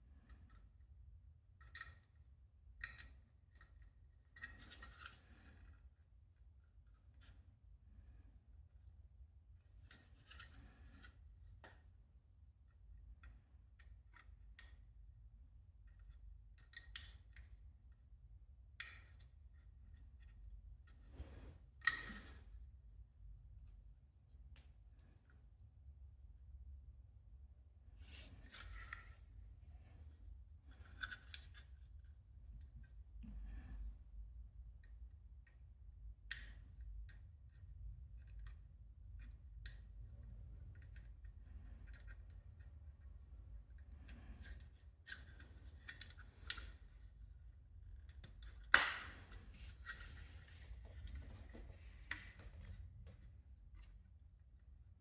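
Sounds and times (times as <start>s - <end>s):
small clicks and snips: 2.8s - 5.7s, 15.9s - 17.6s, 36.2s - 37.6s, 44.0s - 46.9s, 48.0s - 50.1s.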